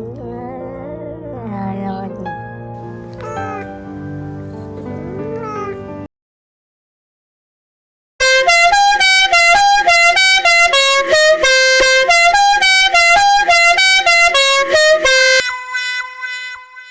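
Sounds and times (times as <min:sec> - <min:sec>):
bright horn-like tune: 0:02.8 - 0:03.8, 0:08.2 - 0:16.9.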